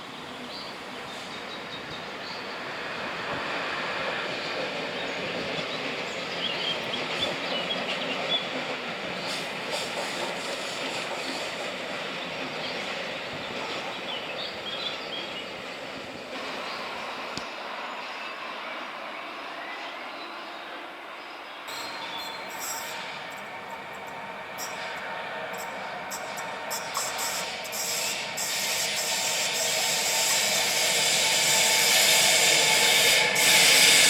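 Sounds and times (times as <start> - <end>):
train wheels rushing on rails: 0.0 - 34.0
high-pitched wheel squeals: 21.7 - 23.4.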